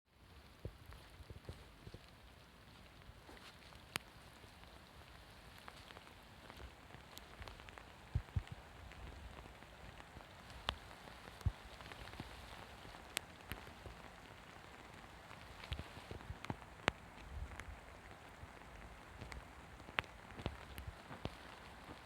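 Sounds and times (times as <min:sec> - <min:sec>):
raindrops striking close by: 0:00.1 - 0:22.0
steady faint rain: 0:00.1 - 0:22.0.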